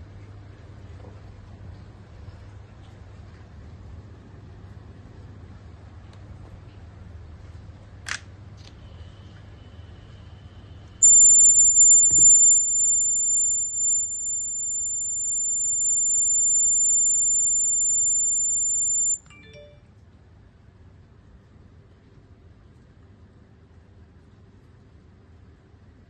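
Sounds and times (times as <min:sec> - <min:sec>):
high-pitched alarm buzzer: 0:11.0 - 0:19.2.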